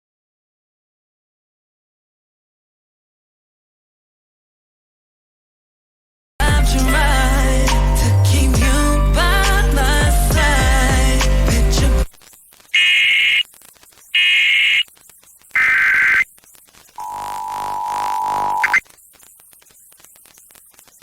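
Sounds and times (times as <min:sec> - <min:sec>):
music on radio: 0:06.4 - 0:14.9
warbling digital data tone: 0:12.3 - 0:21.0
two-tone attention signal: 0:15.6 - 0:16.3, 0:17.0 - 0:18.8.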